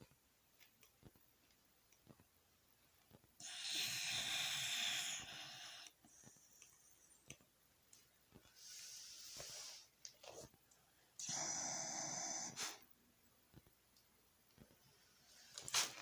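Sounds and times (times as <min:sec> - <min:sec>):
dog snoring: 0:03.4 - 0:05.9, 0:11.2 - 0:12.8.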